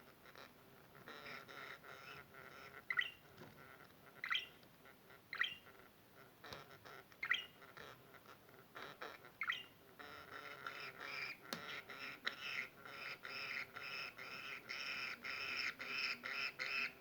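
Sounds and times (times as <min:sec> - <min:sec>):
budgerigar chirping: 0:01.1 - 0:03.2, 0:04.1 - 0:04.6, 0:05.3 - 0:05.8, 0:06.5 - 0:08.0, 0:08.8 - 0:17.0
budgerigar warbling chatter: 0:01.1 - 0:03.2, 0:04.2 - 0:04.6, 0:05.3 - 0:05.7, 0:07.2 - 0:08.0, 0:08.8 - 0:17.0.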